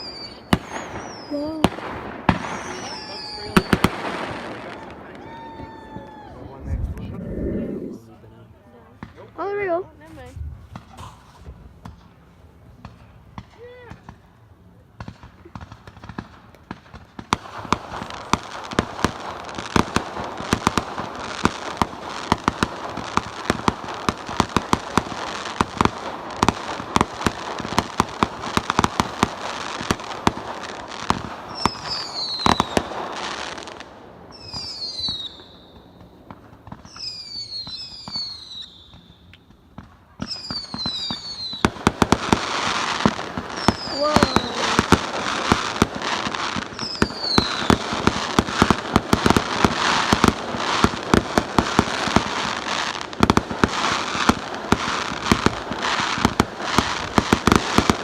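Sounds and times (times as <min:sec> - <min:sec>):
falling firework whistles: 0:00.0 - 0:08.1, 0:19.7 - 0:39.6, 0:40.2 - 0:58.0
fireworks crackling: 0:00.0 - 0:58.0.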